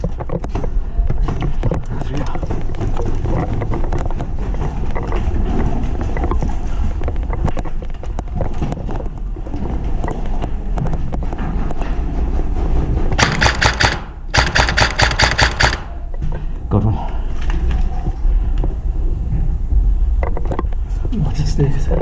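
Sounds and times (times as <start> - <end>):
airsoft gunfire bursts: 13.2 - 16.1
handling knocks: 13.2 - 16.2.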